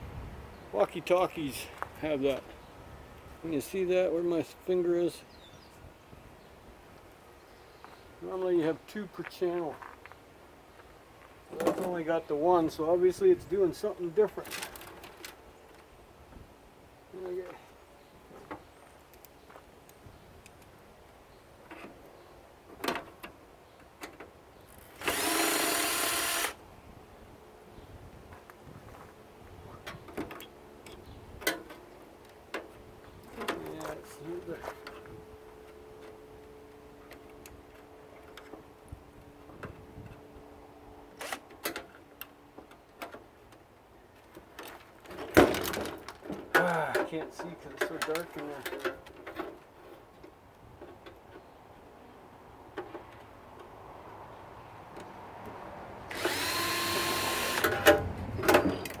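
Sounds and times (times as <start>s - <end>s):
drill running: 25.0s - 26.6s, 56.1s - 57.8s.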